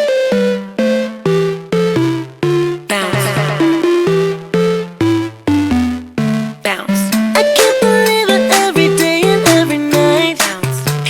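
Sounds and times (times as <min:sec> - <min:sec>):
electronic synthesizer music: 0:00.0 - 0:06.6.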